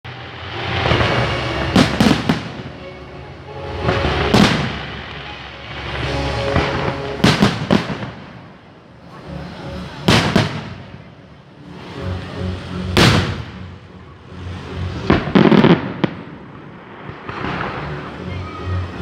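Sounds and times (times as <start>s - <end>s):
fireworks bangs: 0.1s - 3.0s, 3.6s - 12.0s, 12.9s - 19.0s
music: 0.1s - 19.0s.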